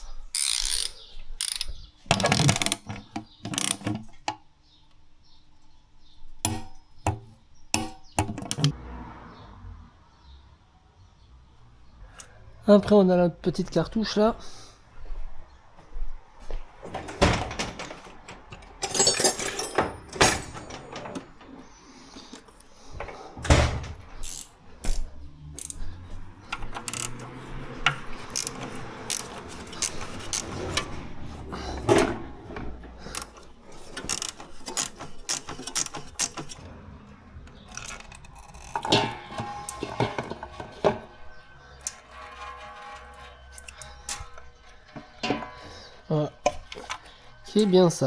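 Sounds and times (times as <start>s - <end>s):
metal tools clicking and clanking: 0.0s - 4.4s, 6.3s - 8.8s, 16.8s - 48.0s.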